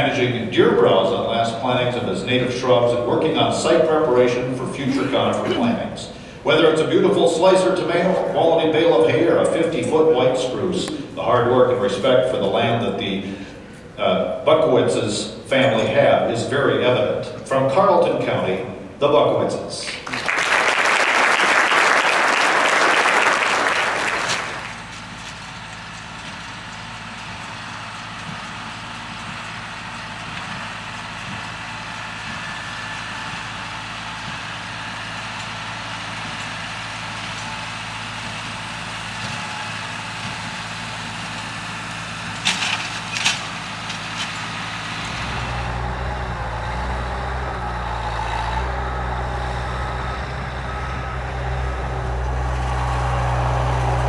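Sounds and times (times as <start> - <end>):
applause: 19.9 - 24.9
engine idling: 22.9 - 54.0.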